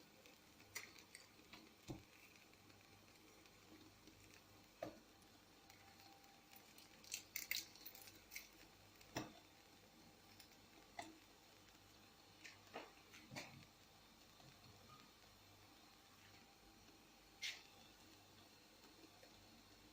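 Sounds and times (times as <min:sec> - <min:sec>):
small clicks and taps: 0:00.6 - 0:02.3.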